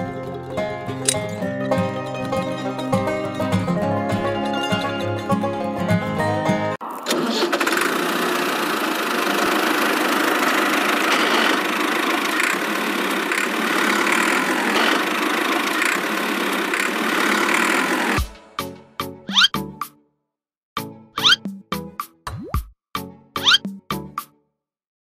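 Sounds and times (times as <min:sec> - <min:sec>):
small motor buzzing: 0:07.4 - 0:18.2.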